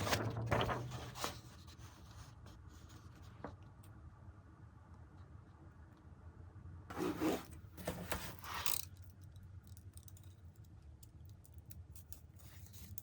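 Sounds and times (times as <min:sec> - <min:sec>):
paper rubbing and scraping: 0:00.0 - 0:03.3.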